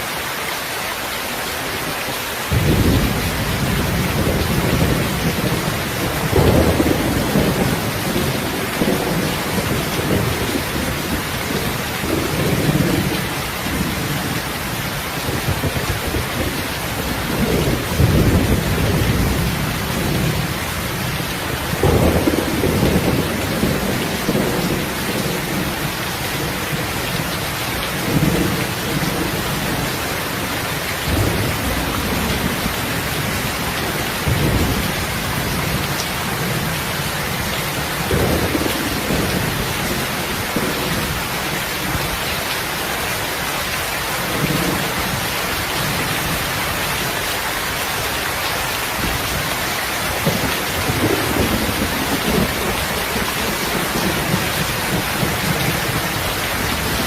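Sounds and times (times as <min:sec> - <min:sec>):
heavy rain hissing: 0:00.0 - 0:57.0.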